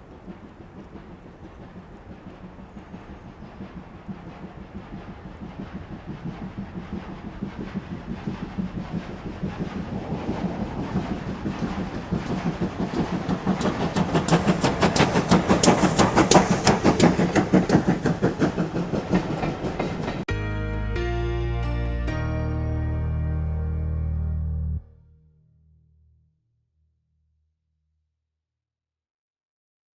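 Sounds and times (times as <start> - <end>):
steam locomotive exhaust beats: 0.0 - 23.2
music: 20.3 - 26.2.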